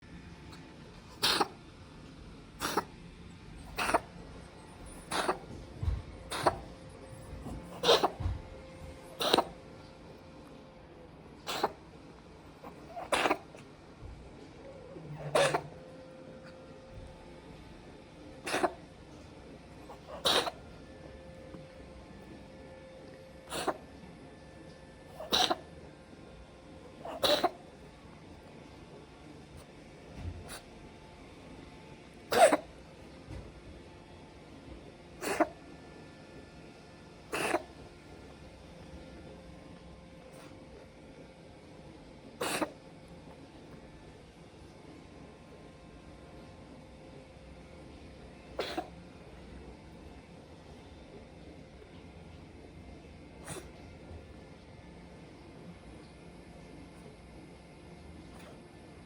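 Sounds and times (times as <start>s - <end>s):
cat coughing: 0.5s - 1.7s, 2.5s - 3.0s, 3.6s - 10.6s, 11.4s - 13.7s, 14.8s - 17.2s, 18.3s - 22.4s, 23.4s - 24.1s, 25.1s - 26.2s, 26.8s - 28.8s, 29.6s - 30.8s, 32.2s - 33.4s, 35.1s - 35.7s, 37.2s - 38.3s, 39.7s - 40.6s, 42.2s - 42.9s, 48.4s - 49.4s, 53.3s - 54.3s, 58.3s - 58.6s.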